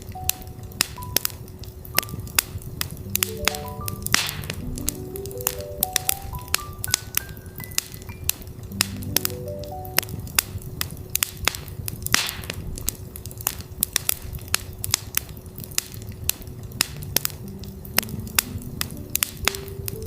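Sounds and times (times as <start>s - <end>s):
campfire crackling and popping: 0.0s - 20.0s
soft synth notes: 3.0s - 10.4s.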